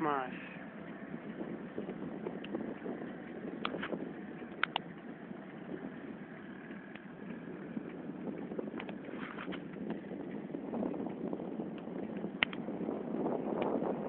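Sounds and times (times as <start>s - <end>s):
sharp clicks: 3.6s - 5.1s, 6.6s - 8.0s, 8.7s - 10.0s, 11.7s - 12.6s.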